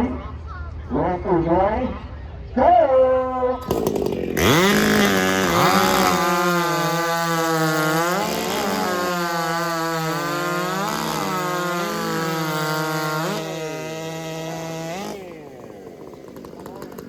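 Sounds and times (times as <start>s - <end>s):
chainsaw cutting a log: 3.6s - 17.0s.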